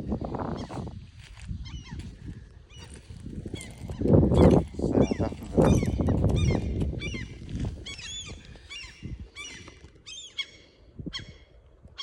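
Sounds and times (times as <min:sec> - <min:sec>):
bird calling: 0:03.5 - 0:12.0.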